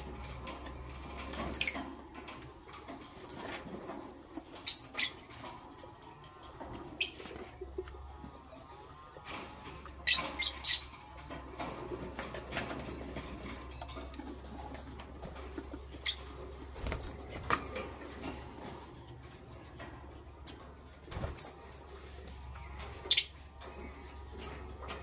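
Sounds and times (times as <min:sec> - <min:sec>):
birds scratching and rustling: 0:00.0 - 0:25.0
lovebirds chirping: 0:22.5 - 0:24.3.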